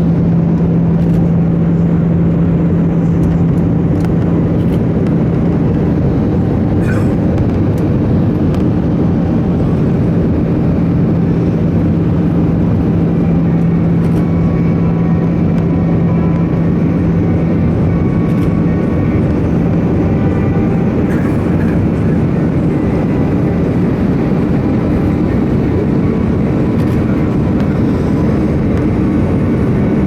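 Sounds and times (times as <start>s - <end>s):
airflow rushing in aircraft cabin: 0.0s - 30.0s
jet engines humming: 0.0s - 30.0s.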